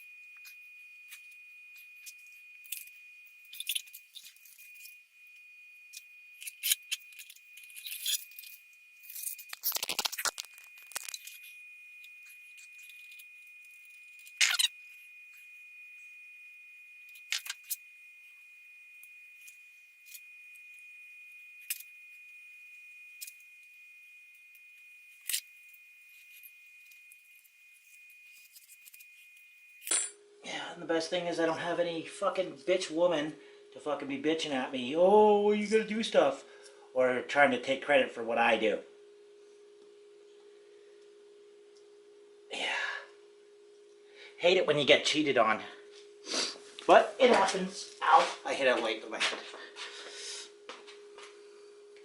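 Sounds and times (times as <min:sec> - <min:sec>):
faint high-pitched whine: 0:00.0 - 0:52.0
metal tools clinking: 0:03.5 - 0:04.9, 0:06.4 - 0:11.4.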